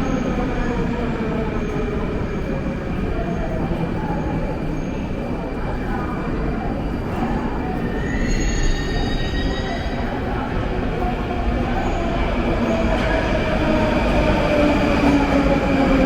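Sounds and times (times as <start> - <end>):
metro train rumble and whine: 0.0 - 16.0.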